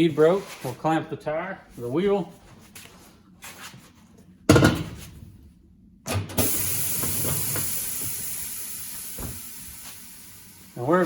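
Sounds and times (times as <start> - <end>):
compressed air hissing: 6.4 - 11.0.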